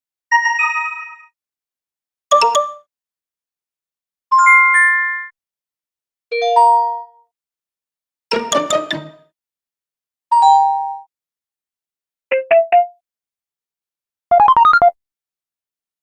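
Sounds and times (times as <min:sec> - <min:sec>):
tinkling chime effects: 0:08.3 - 0:09.2.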